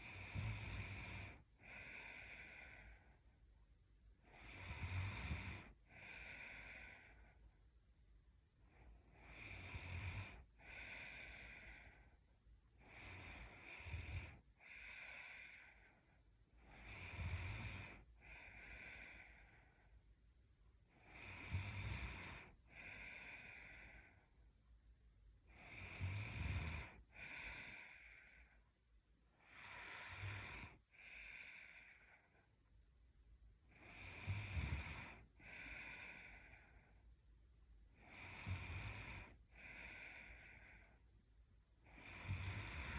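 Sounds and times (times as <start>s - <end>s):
soft snoring: 0.0s - 3.1s, 4.2s - 7.4s, 8.8s - 12.2s, 12.8s - 19.9s, 20.9s - 24.2s, 25.4s - 28.6s, 29.3s - 32.4s, 33.6s - 37.0s, 37.9s - 41.0s, 41.8s - 42.9s
slow sleeping breaths: 0.0s - 24.8s, 25.4s - 42.9s.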